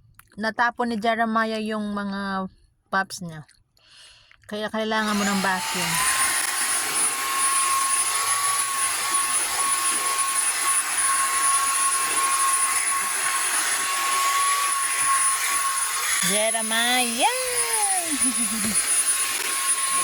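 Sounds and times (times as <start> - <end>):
handheld vacuum running: 5.0 - 20.0.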